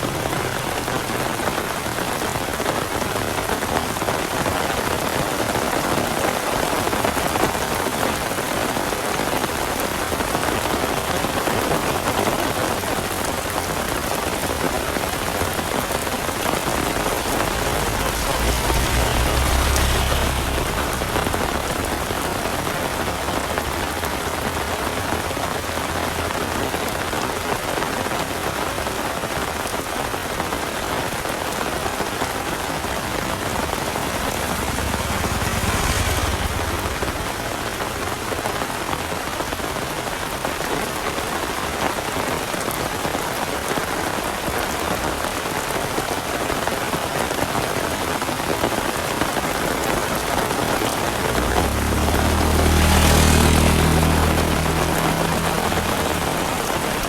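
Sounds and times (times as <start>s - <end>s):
heavy rain falling: 0.0s - 57.0s
low rumble: 15.2s - 25.0s, 31.9s - 38.7s, 51.1s - 57.0s.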